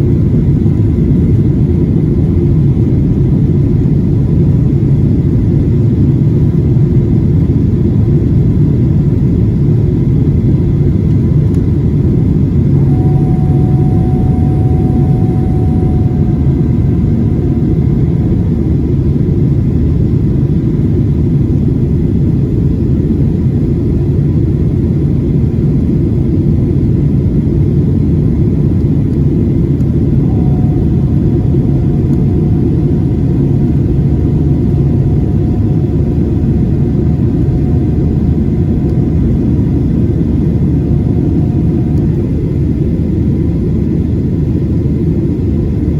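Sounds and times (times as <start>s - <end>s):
jet engines rumbling in cabin: 0.0s - 45.9s
faint thin whine: 12.3s - 20.7s, 29.4s - 44.1s.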